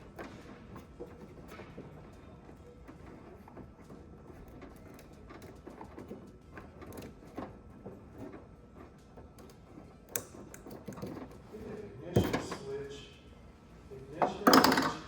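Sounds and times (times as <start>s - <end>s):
low background hum: 0.0s - 15.0s
hands clicking and rustling wiring: 2.8s - 11.4s.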